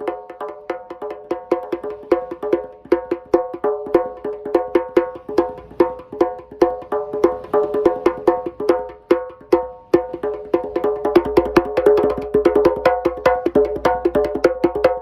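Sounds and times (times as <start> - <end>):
djembe drumming: 0.0 - 15.0.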